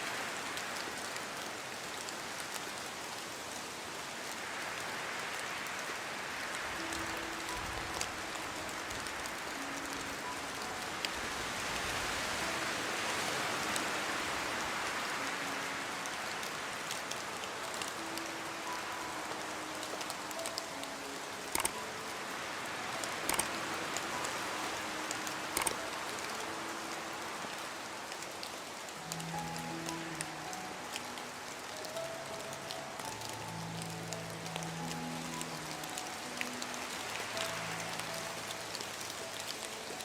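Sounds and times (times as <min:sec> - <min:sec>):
steady rain hiss: 0:00.0 - 0:40.0
raindrop impacts: 0:16.8 - 0:22.0, 0:23.0 - 0:26.7.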